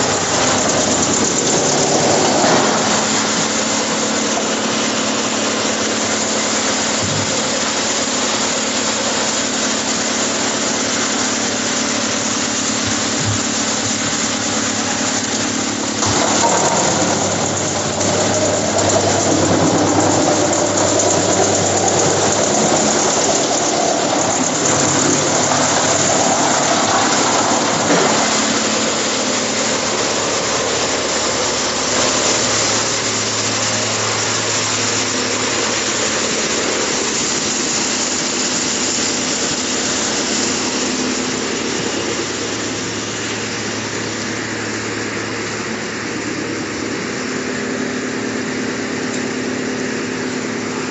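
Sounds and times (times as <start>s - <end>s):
wood chipper engine humming: 0.0s - 50.9s
wood being chipped: 12.8s - 28.8s.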